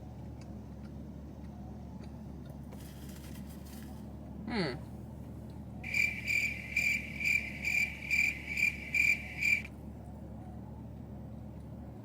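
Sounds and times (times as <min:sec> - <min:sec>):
cricket chirping: 0:05.8 - 0:09.7.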